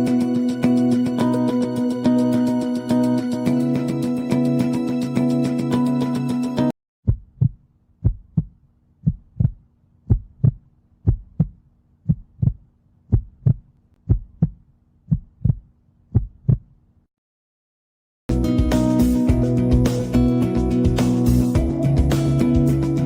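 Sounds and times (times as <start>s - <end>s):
music: 0.0s - 6.7s, 18.3s - 23.0s
heartbeat through stethoscope: 7.1s - 16.7s.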